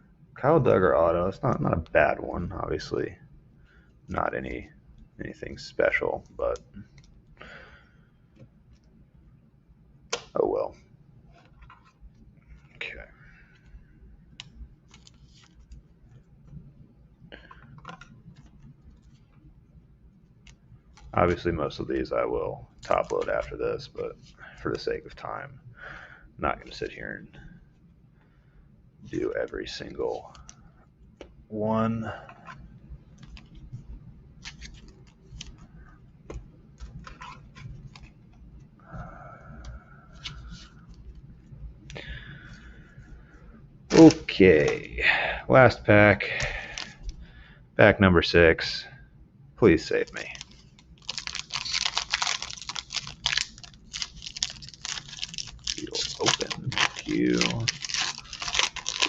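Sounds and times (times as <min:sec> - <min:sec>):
steady low hum: 0:00.0 - 0:59.0
trading cards clicking and rustling: 0:11.4 - 0:16.6, 0:17.4 - 0:19.4, 0:22.8 - 0:24.1, 0:32.3 - 0:38.7, 0:46.3 - 0:47.2, 0:49.9 - 0:59.0.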